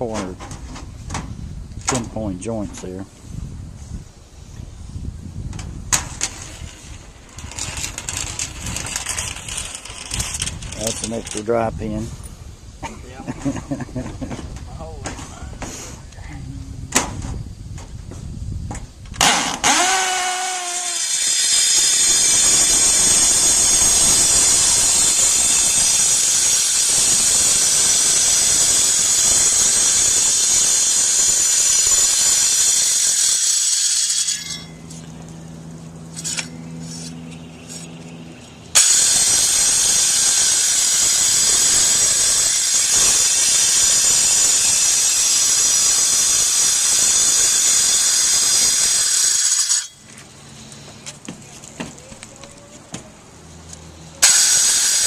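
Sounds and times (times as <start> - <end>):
grinder cutting mortar: 19.2 - 34.6, 38.8 - 49.9, 54.2 - 55.0.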